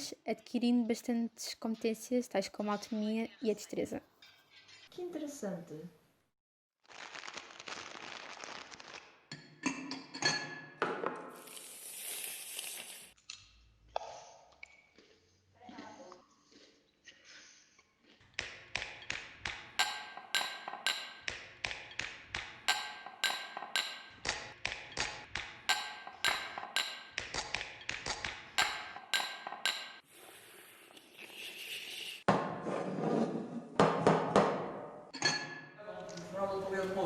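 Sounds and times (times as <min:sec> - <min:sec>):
sharp ringing taps: 0:19.8 - 0:21.3, 0:22.7 - 0:24.2, 0:25.7 - 0:27.2, 0:28.6 - 0:30.0.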